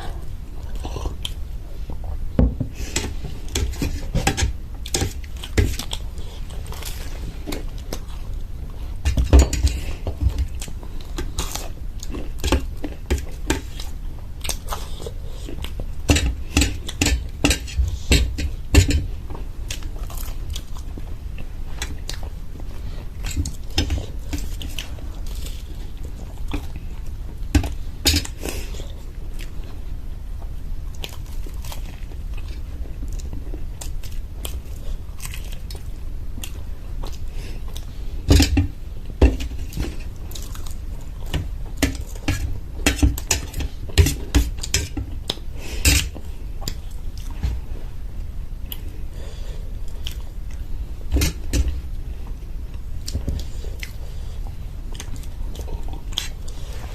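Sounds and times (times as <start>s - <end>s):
wet chewing: 49.9s - 50.7s.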